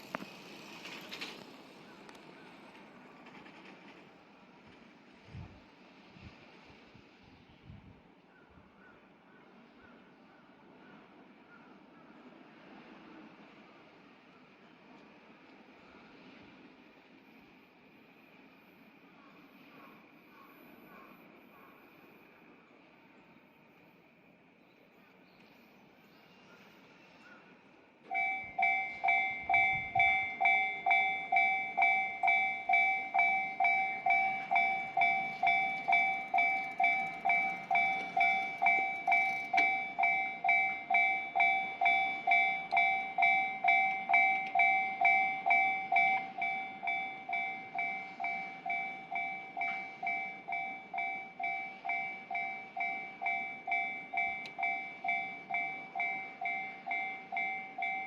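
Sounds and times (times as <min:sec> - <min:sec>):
level crossing warning bell: 0:28.0 - 0:58.0.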